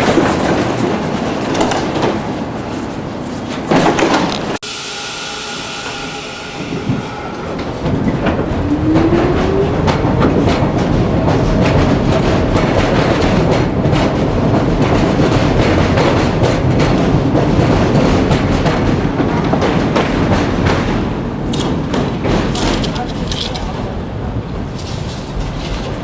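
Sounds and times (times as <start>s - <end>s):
train wheels clicking over rail joints: 0.0s - 26.0s
train motor whine: 1.5s - 12.6s
high wheel squeal: 4.6s - 11.0s.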